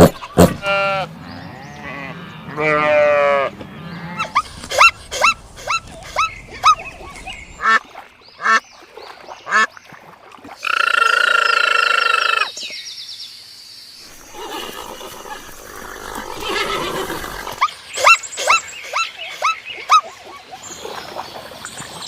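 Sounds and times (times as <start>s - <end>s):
animal held call: 0.0s - 7.8s, 14.0s - 20.2s
animal yelps: 4.1s - 6.9s, 14.2s - 20.6s.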